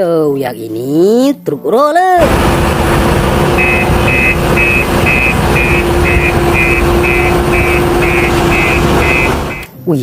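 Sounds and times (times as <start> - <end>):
steady hum: 2.2 - 9.7
toy electronic reversing beeps: 3.6 - 9.7.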